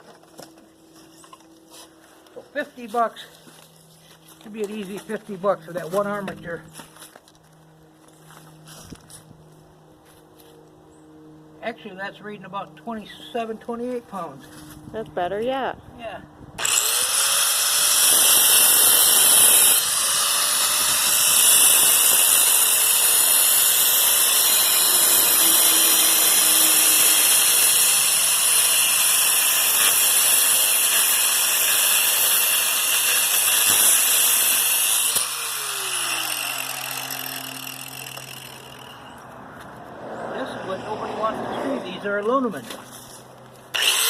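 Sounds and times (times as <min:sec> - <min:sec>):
power tool grinding metal: 0:16.6 - 0:39.2, 0:43.7 - 0:44.0.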